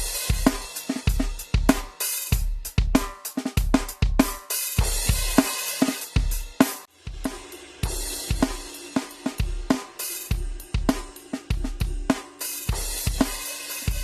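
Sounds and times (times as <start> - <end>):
cymbal wash: 7.0 - 14.0.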